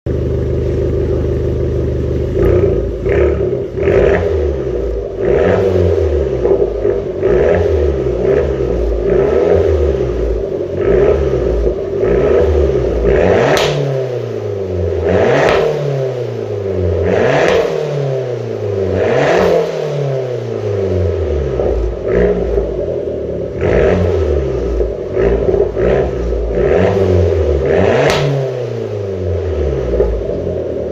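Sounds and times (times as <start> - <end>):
exhaust popping and crackling: 0.1 - 14.1, 21.4 - 30.9
car engine revving: 0.1 - 30.9.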